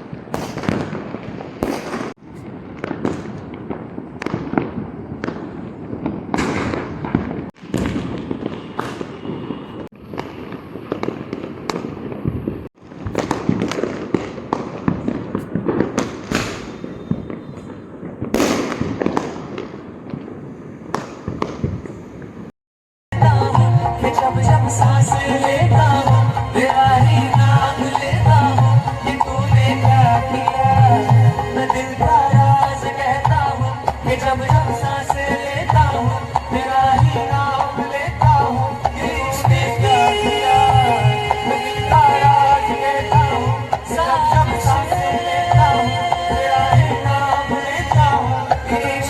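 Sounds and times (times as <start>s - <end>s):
firecrackers banging and crackling: 0.0s - 22.5s.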